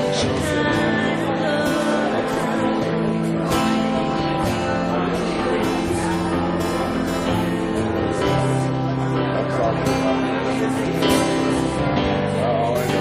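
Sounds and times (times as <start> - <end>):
strummed acoustic guitar: 0.0 - 13.0.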